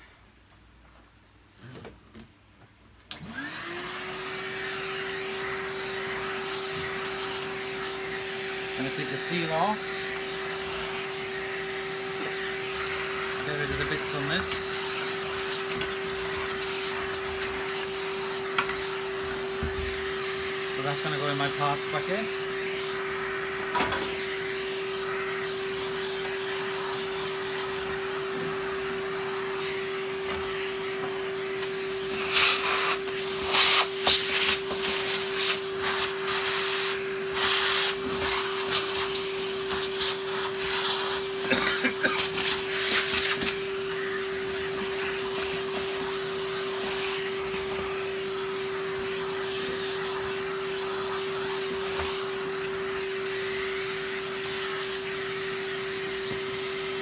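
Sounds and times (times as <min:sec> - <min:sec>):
vacuum cleaner humming: 0:03.1 - 0:57.0
vacuum nozzle hissing bursts: 0:04.2 - 0:57.0.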